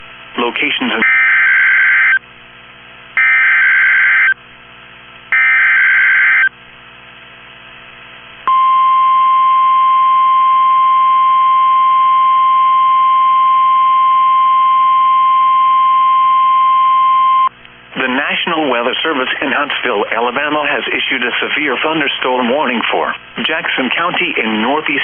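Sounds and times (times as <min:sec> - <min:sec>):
steady warning alarm tone: 0:01.0 - 0:02.2, 0:03.2 - 0:04.4, 0:05.3 - 0:06.5.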